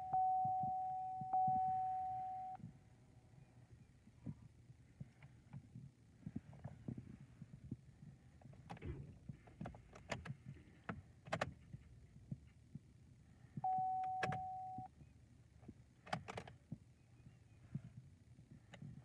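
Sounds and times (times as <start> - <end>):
electronic warning beep: 0.0 - 2.6, 13.6 - 14.9
car clicks and knocks: 8.4 - 11.7, 16.0 - 16.6.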